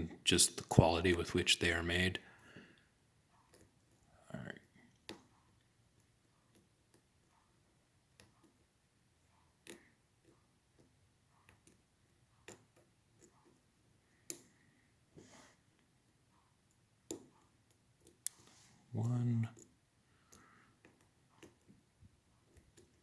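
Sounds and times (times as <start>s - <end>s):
soft scrape: 15.2s - 15.6s.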